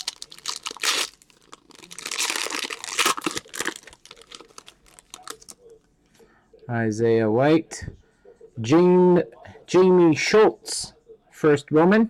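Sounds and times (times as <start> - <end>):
foil wrapper crinkling and tearing: 0.0 - 5.6.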